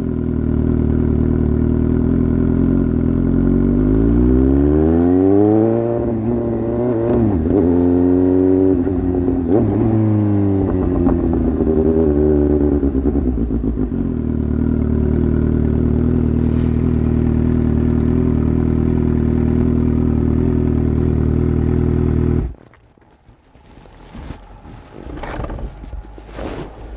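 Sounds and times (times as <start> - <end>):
motorcycle engine idling: 12.9 - 22.5.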